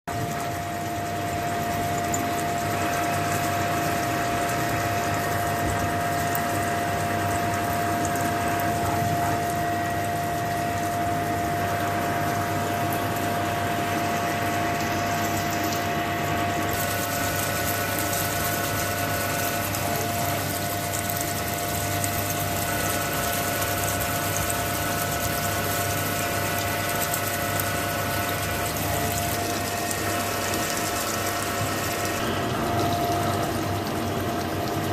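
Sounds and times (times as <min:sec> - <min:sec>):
machine mechanical whine: 0:00.1 - 0:34.9.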